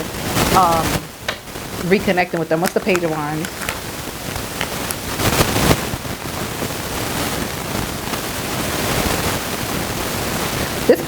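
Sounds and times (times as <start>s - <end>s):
rustling burst: 1.8s - 7.4s.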